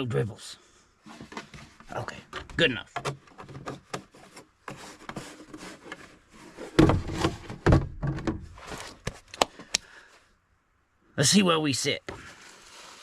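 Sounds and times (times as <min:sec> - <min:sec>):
heavy thumps: 0:06.7 - 0:08.6
plastic jug knocks: 0:06.8 - 0:08.4.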